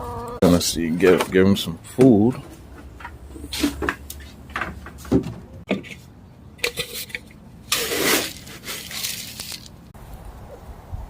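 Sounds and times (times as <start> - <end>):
feed pellets clattering: 6.7 - 9.8.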